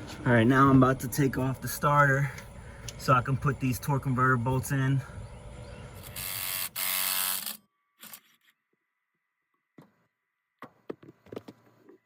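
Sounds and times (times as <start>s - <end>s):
power tool rattling and whining: 6.0s - 8.3s.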